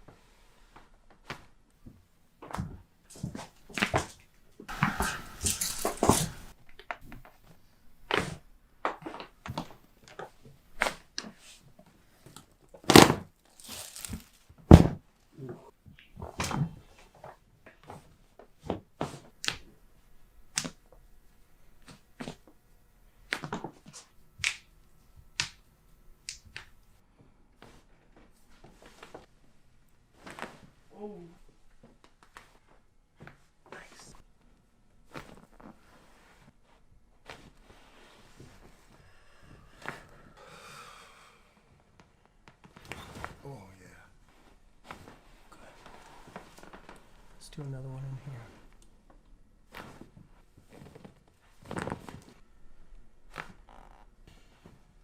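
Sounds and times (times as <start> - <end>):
joints cracking and popping: 4.7 - 7.3
rustling: 9.0 - 15.4, 42.0 - 55.0.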